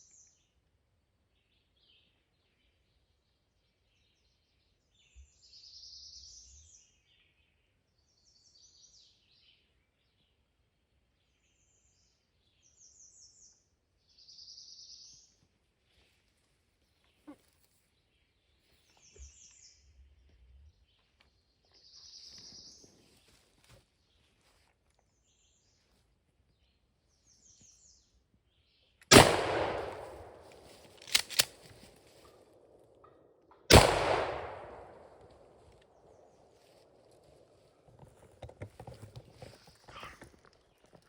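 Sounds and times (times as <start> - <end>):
shotgun blast: 29.1 - 31.5, 33.7 - 35.2
shotgun action clicks: 29.1 - 31.9, 33.7 - 35.1.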